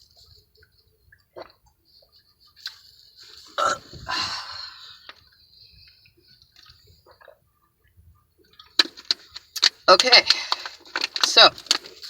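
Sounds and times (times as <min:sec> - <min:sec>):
gulping water: 0:00.0 - 0:12.0
woman's throaty sound: 0:03.6 - 0:04.8
breathy gasp: 0:03.6 - 0:05.1.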